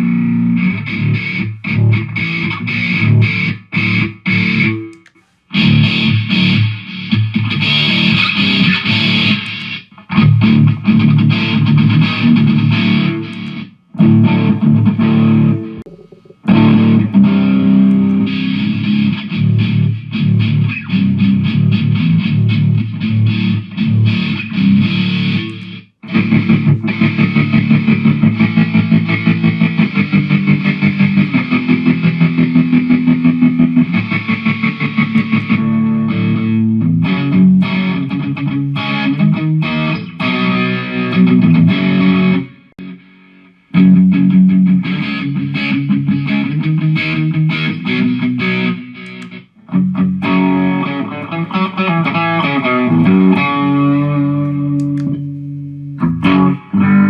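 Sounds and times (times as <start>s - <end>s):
distorted electric guitar riffs: 0.0s - 57.0s.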